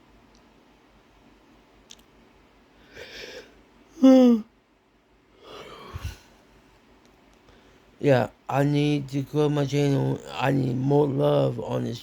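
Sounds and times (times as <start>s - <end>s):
man breathing heavily and sniffing: 2.7s - 3.6s, 5.4s - 6.5s.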